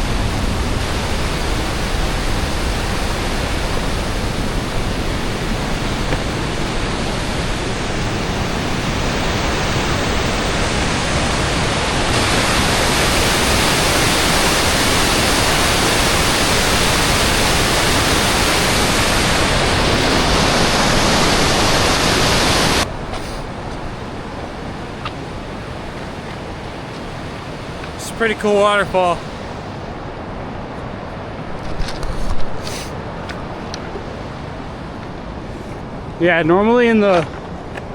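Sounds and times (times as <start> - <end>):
waterfall rushing: 0.0 - 30.3.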